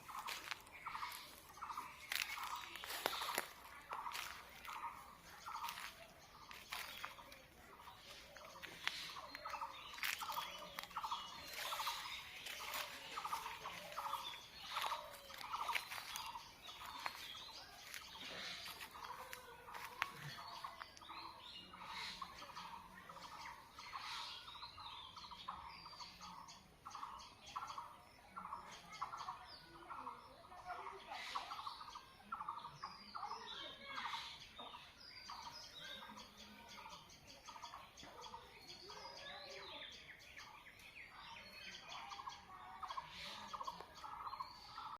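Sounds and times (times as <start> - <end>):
rapidly pulsed bird calls: 0.0 - 27.9.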